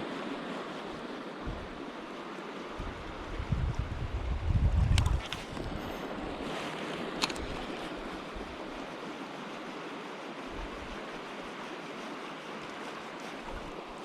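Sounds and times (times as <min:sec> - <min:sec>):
sharp click: 0:07.2 - 0:07.6.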